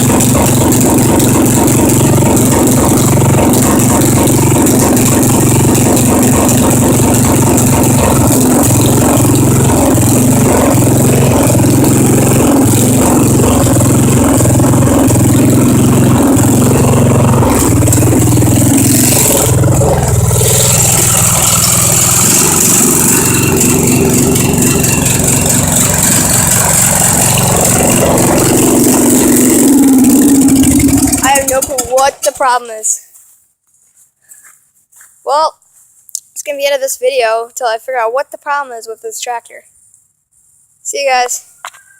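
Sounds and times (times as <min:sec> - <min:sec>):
riding mower engine running: 0:00.0 - 0:32.7.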